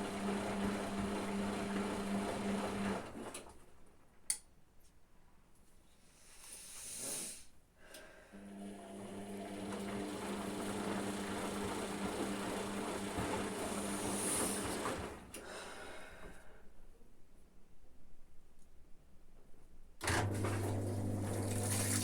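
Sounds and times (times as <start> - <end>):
washing machine humming: 0.0 - 3.7, 8.4 - 15.8, 20.0 - 22.0
washing machine swish: 13.3 - 15.2, 20.2 - 22.0.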